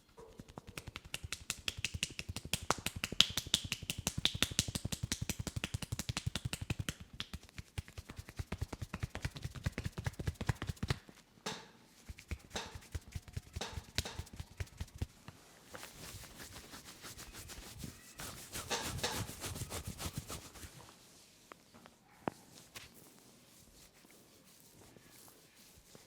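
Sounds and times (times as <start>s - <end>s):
fast tapping strokes: 0.4s - 11.0s, 12.1s - 15.1s, 16.0s - 20.7s
hands rubbing head: 0.4s - 11.0s, 12.0s - 15.1s, 15.7s - 21.0s, 22.6s - 26.0s
hands slapping head: 0.4s - 11.0s, 12.1s - 15.1s.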